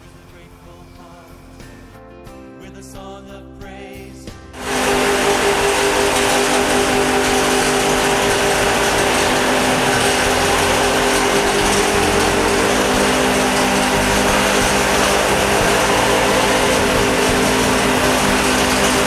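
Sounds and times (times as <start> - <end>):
milling machine drone: 4.6 - 19.0.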